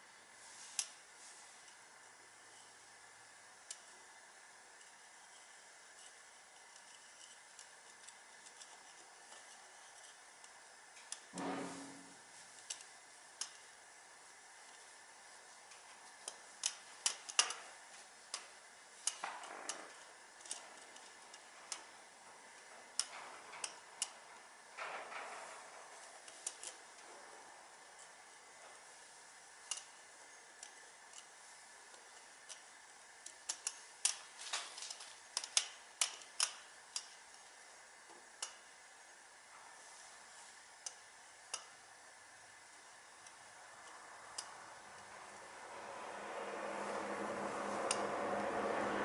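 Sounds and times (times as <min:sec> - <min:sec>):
short scraping: 0:11.4 - 0:12.2.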